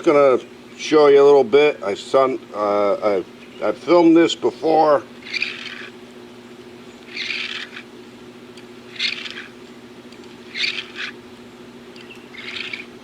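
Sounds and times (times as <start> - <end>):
toy car wheels on sandpaper: 5.2 - 5.9, 7.0 - 7.9, 8.9 - 9.6, 10.5 - 11.2, 12.3 - 12.9.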